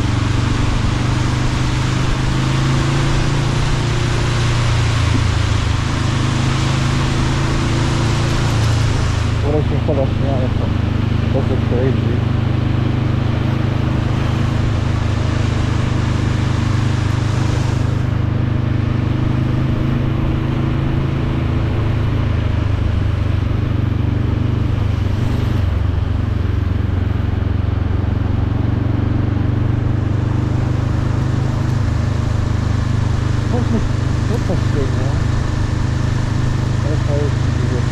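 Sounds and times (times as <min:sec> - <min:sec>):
motorcycle engine running: 0:00.0 - 0:37.9.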